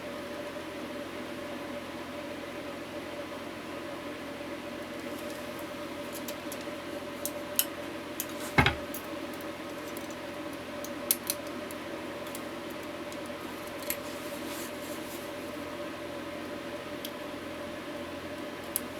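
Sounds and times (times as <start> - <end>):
knock: 8.6 - 8.8.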